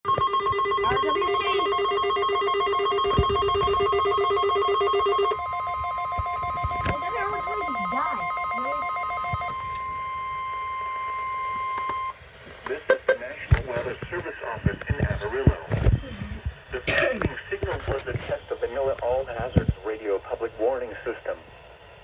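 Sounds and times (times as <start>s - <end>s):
steady alarm tone: 0.0s - 12.2s
weather radio alarm beeping: 0.0s - 14.2s.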